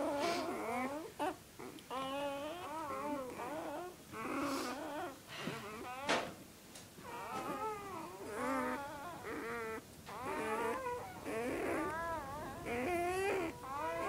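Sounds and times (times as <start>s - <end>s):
puppies crying: 0.0s - 6.3s, 7.0s - 14.0s.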